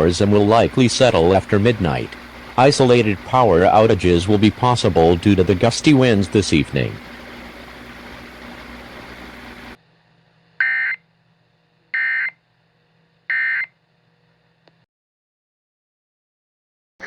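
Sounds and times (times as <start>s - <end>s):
steady hiss: 0.0s - 9.8s.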